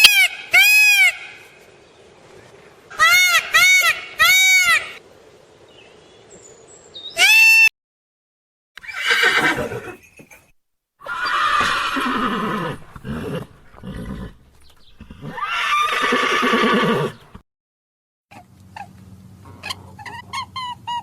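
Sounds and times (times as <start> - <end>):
horse whinnying: 8.8 - 17.4.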